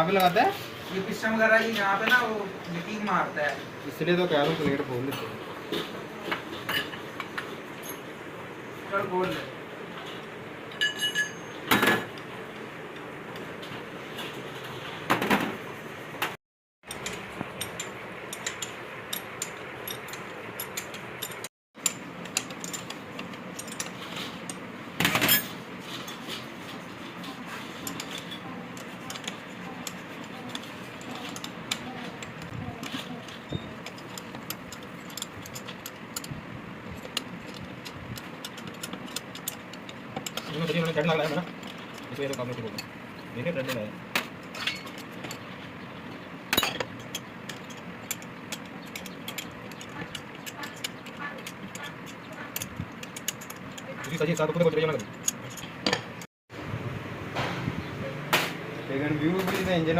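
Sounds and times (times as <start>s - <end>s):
steady background hum: 0.0s - 59.9s
metal tools clinking on metal: 6.6s - 7.0s, 7.8s - 8.1s, 10.7s - 12.0s, 16.8s - 26.4s, 27.6s - 45.6s, 46.4s - 56.3s.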